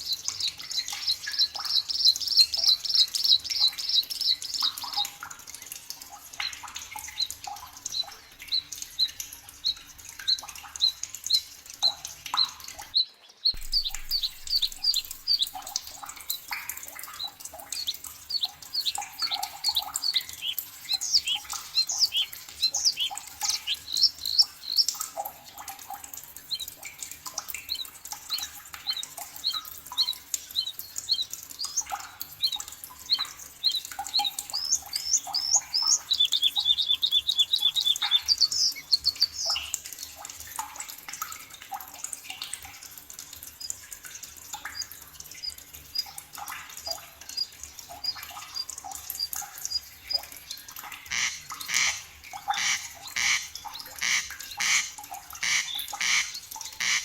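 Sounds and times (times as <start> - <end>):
bird trilling: 13.6 - 15.7, 17.8 - 24.9, 28.9 - 39.8
bird harsh calls: 17.8 - 24.9, 29.4 - 39.8, 51.1 - 57.0.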